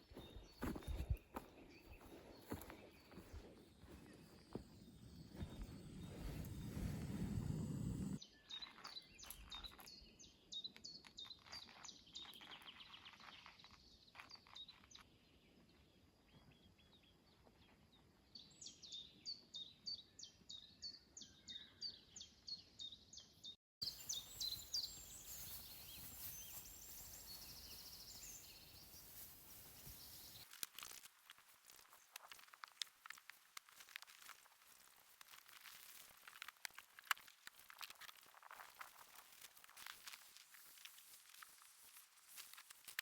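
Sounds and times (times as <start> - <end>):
small bird chirping: 0.0 - 30.5.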